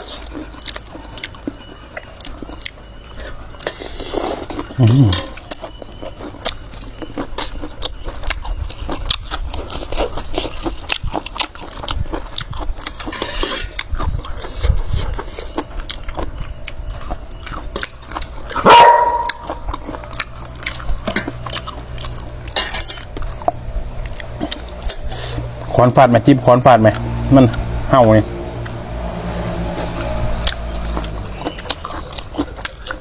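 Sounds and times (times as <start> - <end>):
dog barking: 18.6 - 19.6.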